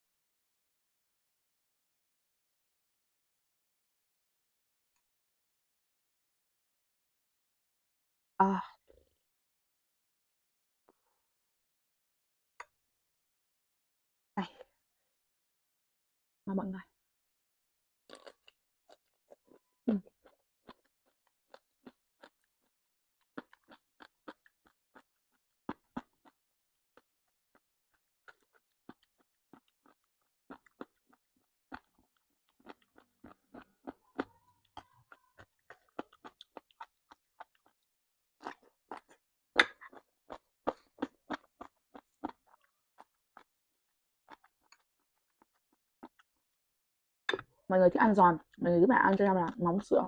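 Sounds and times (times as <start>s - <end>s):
crunchy chewing: 18.1s - 26.4s, 27.0s - 43.5s, 44.3s - 46.4s.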